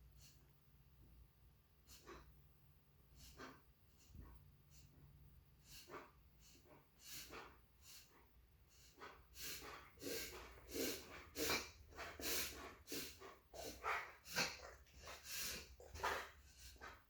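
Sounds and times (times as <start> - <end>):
dog reverse sneezing: 3.2 - 4.9, 5.6 - 8.1, 8.7 - 16.3.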